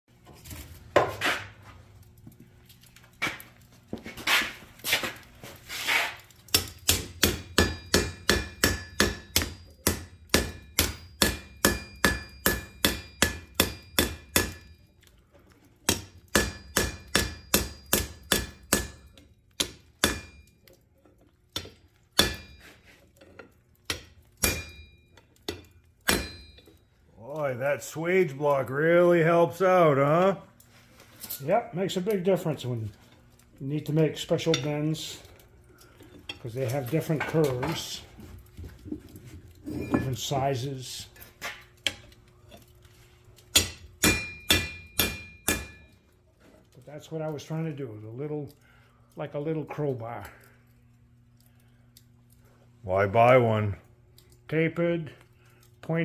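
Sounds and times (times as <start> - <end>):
hammer ringing on hot metal: 6.5 - 14.9, 15.9 - 20.7, 21.6 - 22.8, 23.9 - 26.8, 34.3 - 35.0, 43.5 - 46.0.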